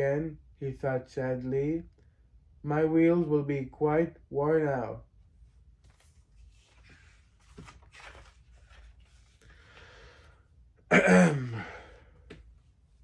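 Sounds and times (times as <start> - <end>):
man breathing softly: 9.3 - 10.6
man groaning: 11.0 - 11.9.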